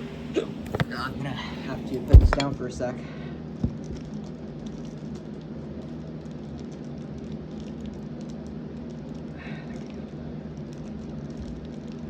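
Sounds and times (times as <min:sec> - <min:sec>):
crackling and rustling from handling: 0:00.0 - 0:02.6
object thumping down: 0:02.0 - 0:02.5.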